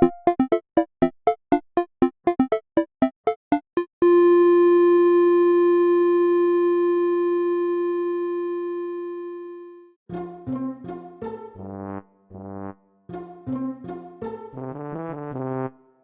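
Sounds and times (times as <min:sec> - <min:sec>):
long synthesizer note: 0:04.0 - 0:09.9.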